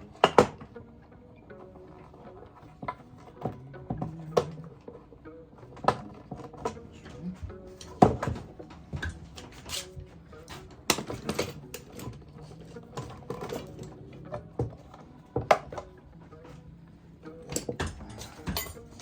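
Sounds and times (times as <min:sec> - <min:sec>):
clamps clicking and knocking: 0:07.8 - 0:12.2, 0:17.5 - 0:19.0.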